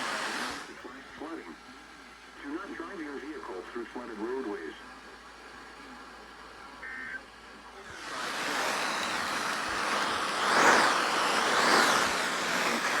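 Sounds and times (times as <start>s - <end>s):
car road noise: 7.8s - 13.0s.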